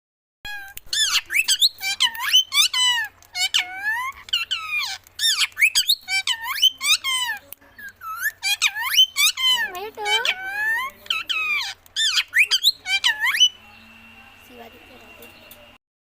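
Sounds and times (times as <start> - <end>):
parrot whistling calls: 0.5 - 15.7.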